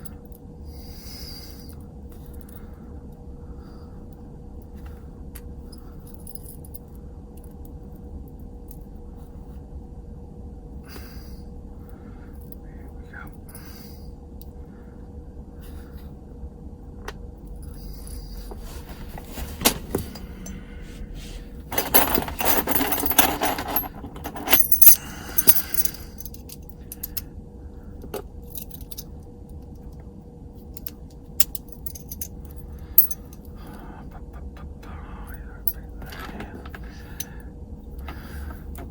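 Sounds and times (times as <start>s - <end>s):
small metal objects jangling: 21.7s - 27.2s, 30.8s - 33.5s.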